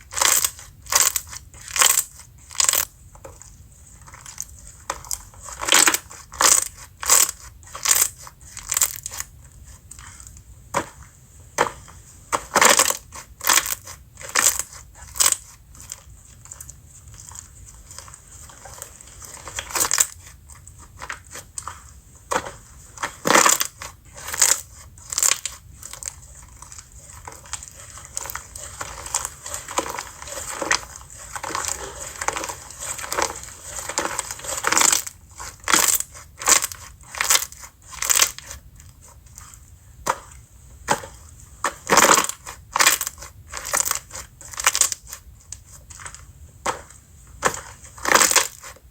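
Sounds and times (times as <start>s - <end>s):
slime crackling and popping: 23.2s - 39.1s, 47.4s - 48.8s.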